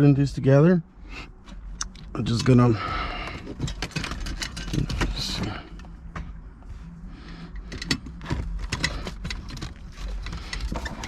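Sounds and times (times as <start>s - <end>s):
plastic parts clicking and knocking: 3.4s - 5.3s, 7.6s - 11.0s.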